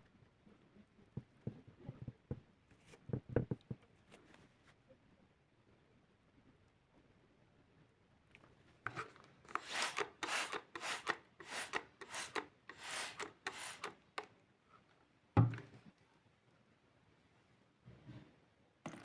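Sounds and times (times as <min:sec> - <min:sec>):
hand rubbing abrasion strokes: 0:09.5 - 0:14.2.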